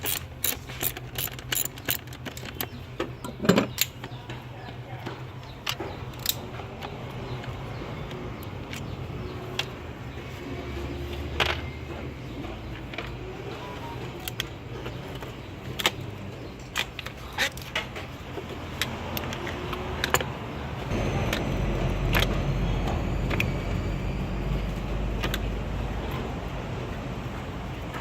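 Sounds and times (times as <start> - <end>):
metal tools clinking on engine parts: 0.0 - 4.5
steady low rumble: 20.9 - 27.3.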